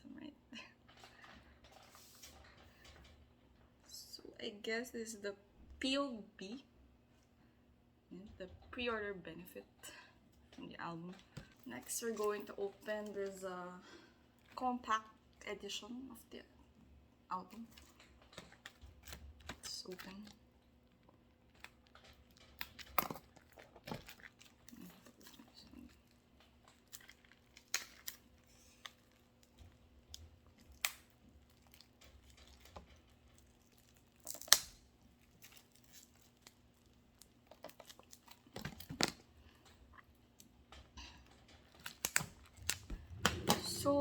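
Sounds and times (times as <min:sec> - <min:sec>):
packaging rustling and crinkling: 0:20.9 - 0:40.5, 0:41.3 - 0:44.0.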